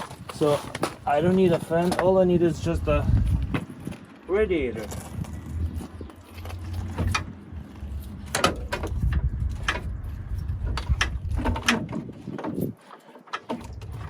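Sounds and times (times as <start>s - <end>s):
low steady rumble: 1.1s - 12.2s.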